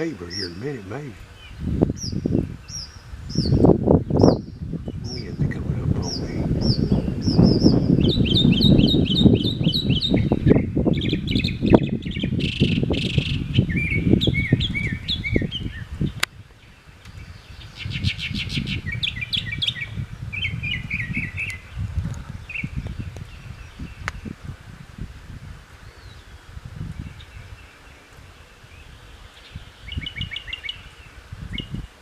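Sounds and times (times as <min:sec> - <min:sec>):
mockingbird singing: 0:00.0 - 0:21.8.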